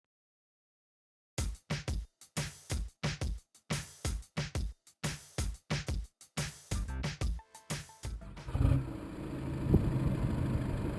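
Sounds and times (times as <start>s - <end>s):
drum machine beat: 1.4s - 8.6s
electronic dance music: 5.7s - 8.5s.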